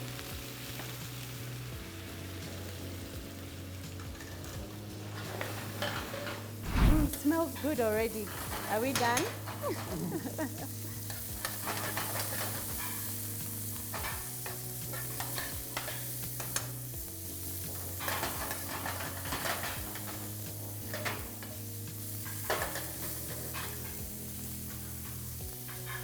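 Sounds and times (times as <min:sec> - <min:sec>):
garlic sizzling in a frying pan: 0:00.0 - 0:26.0
spatula scraping a pan: 0:05.2 - 0:09.9, 0:10.7 - 0:16.9, 0:17.5 - 0:26.0.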